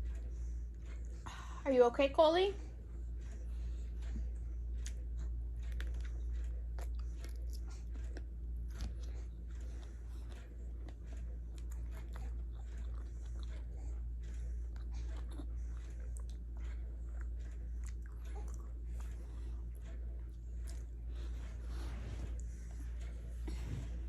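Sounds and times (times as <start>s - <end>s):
steady low hum: 0.0s - 24.0s
chewing: 3.2s - 23.9s.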